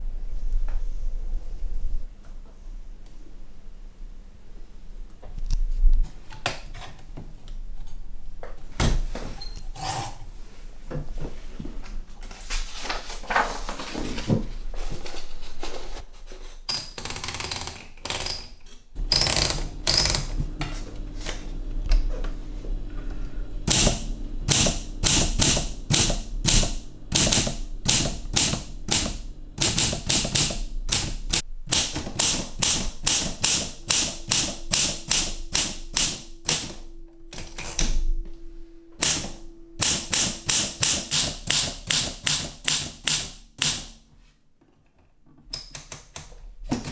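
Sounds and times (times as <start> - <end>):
rustling and handling noise: 10.0 - 16.7
typewriter key strikes: 17.0 - 21.5, 23.6 - 38.1, 39.0 - 44.0.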